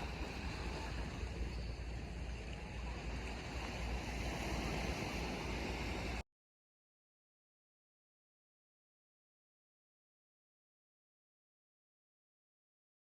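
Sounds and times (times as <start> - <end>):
sea waves washing: 0.0 - 6.2
wind buffeting microphone: 0.0 - 6.2.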